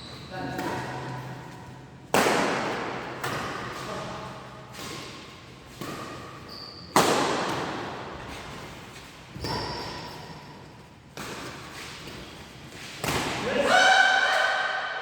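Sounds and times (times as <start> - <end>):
sneaker squeaks on court: 0.0 - 0.9, 5.8 - 7.0, 9.3 - 10.6.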